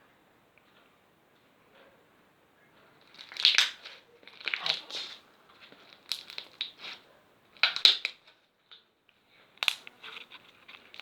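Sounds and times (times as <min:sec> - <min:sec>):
slime crackling and squelching: 0:03.0 - 0:07.0, 0:07.6 - 0:08.3.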